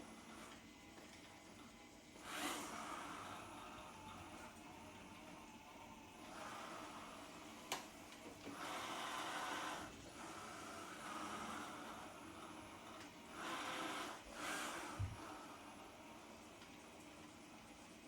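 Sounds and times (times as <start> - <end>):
small motor whirring: 2.2 - 4.4, 8.4 - 15.6.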